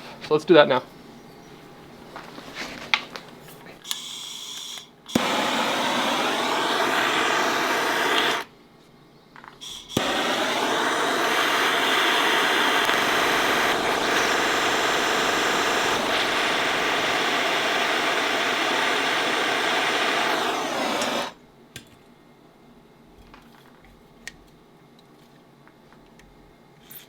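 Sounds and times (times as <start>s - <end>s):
gas torch hissing: 2.2s - 8.5s, 9.6s - 21.4s
gas torch ignition click: 3.8s - 8.5s, 9.6s - 21.4s.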